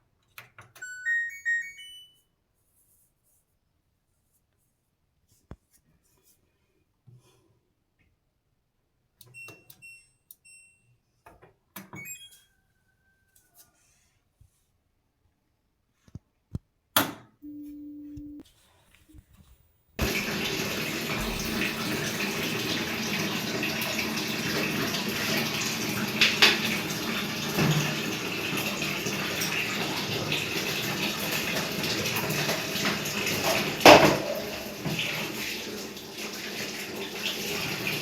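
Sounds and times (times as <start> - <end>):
short high beeps: 0.8 - 2.2, 17.4 - 18.4, 21.2 - 22.9
brief low hum: 17.4 - 18.4, 21.1 - 23.2
water gushing: 20.0 - 38.0.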